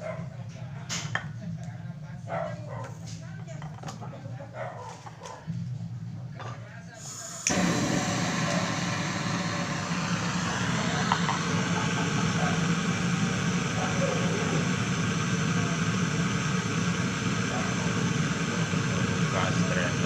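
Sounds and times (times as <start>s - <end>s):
machine hum and hiss: 7.0s - 20.0s.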